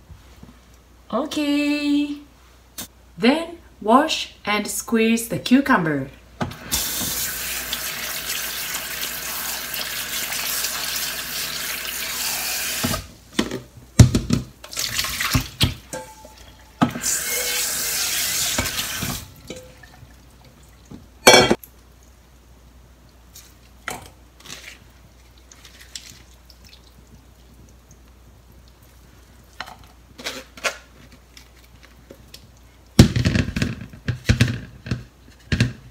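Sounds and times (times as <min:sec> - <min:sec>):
tap water running into sink: 0:06.7 - 0:13.1, 0:16.8 - 0:19.9.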